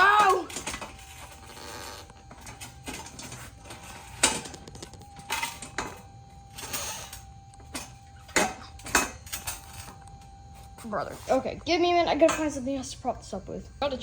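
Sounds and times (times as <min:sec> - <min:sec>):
bike parts clanking and rattling: 0:00.0 - 0:10.4.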